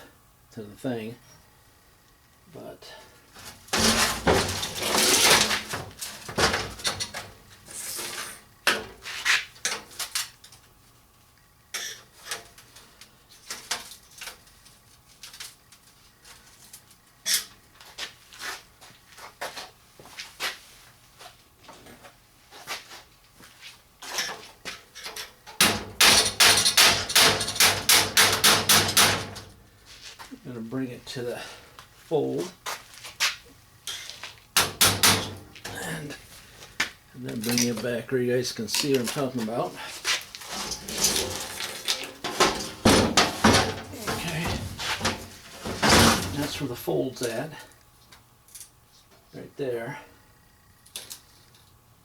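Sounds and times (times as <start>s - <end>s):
metal parts knocking and scraping: 3.4s - 7.4s, 25.0s - 29.5s, 40.4s - 46.7s.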